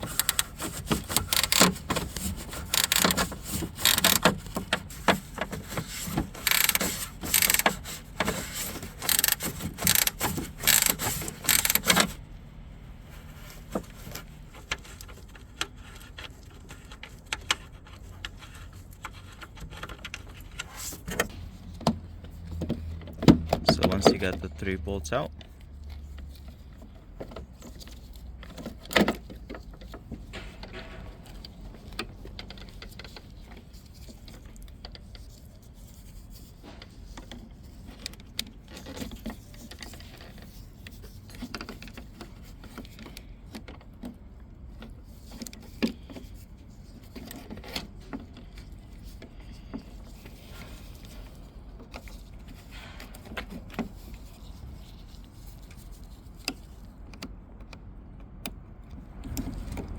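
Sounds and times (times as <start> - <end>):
metal and plastic parts clinking: 0.0 - 12.2.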